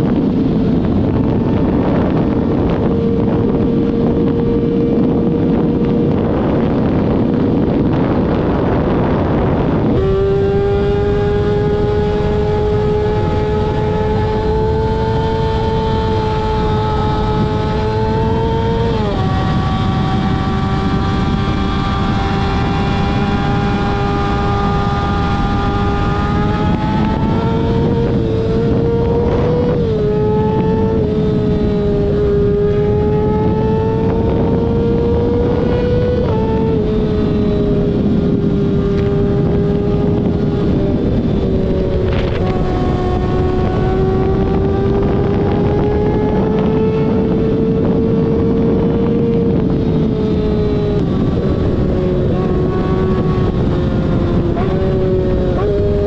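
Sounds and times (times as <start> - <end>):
vehicle engine revving high: 0.0 - 56.0
wind noise on microphone: 0.0 - 56.0.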